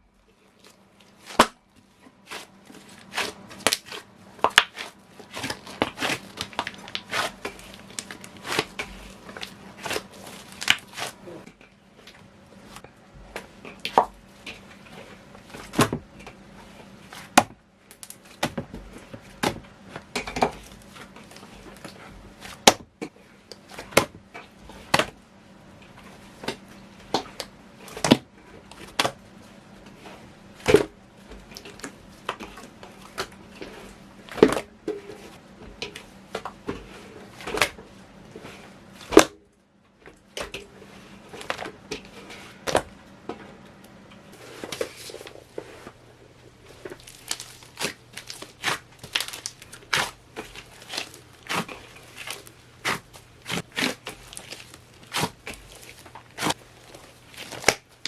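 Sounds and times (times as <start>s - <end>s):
slime being kneaded: 2.2s - 11.5s, 46.8s - 58.0s.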